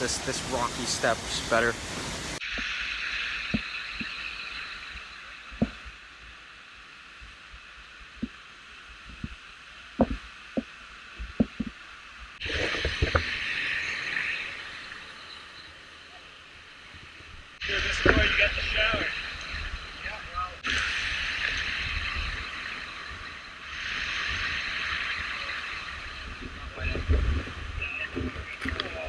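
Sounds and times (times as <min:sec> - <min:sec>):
waterfall rushing: 0:00.0 - 0:03.8.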